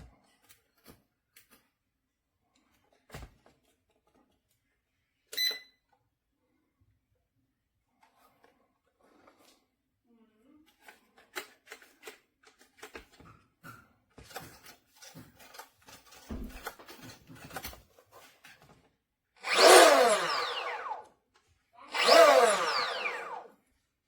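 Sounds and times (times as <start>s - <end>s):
plastic parts clicking: 10.7s - 13.2s
electric motor whine: 19.4s - 21.1s, 21.9s - 23.5s.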